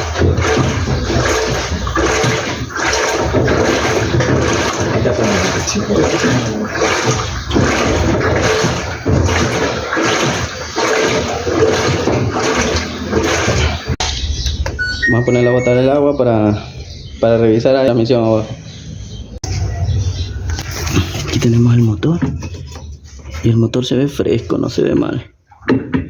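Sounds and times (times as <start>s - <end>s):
washing machine sloshing and churning: 0.0s - 14.9s, 19.4s - 24.8s.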